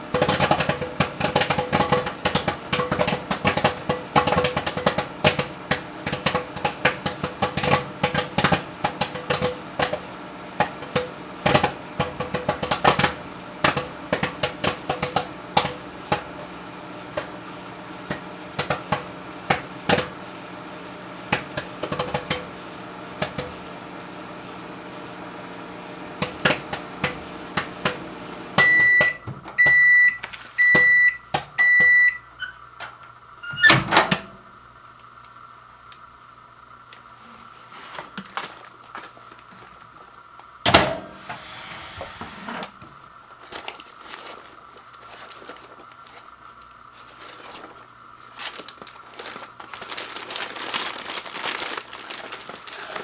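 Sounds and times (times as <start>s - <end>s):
popcorn popping: 0.0s - 41.4s, 42.6s - 53.0s
microwave oven hum: 0.0s - 53.0s
microwave beeps: 28.5s - 32.7s, 33.4s - 34.2s.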